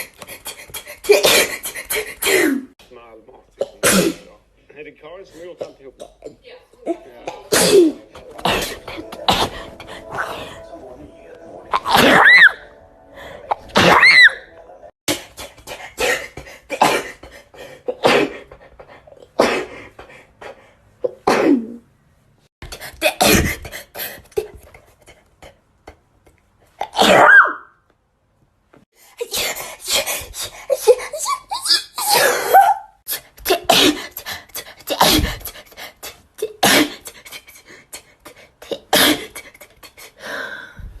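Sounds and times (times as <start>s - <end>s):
girl sneezing: 1.0s - 2.7s, 3.7s - 4.3s, 7.5s - 8.0s, 26.8s - 27.6s, 31.6s - 34.2s, 36.4s - 37.1s.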